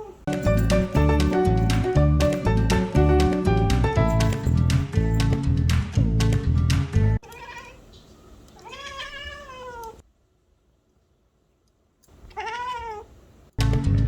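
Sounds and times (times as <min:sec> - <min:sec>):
cat meowing: 0:07.2 - 0:08.0, 0:08.6 - 0:10.0, 0:12.2 - 0:13.2.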